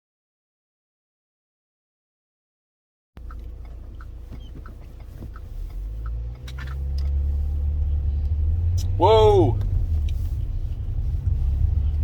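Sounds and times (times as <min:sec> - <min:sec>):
car interior rumble: 0:03.2 - 0:12.0.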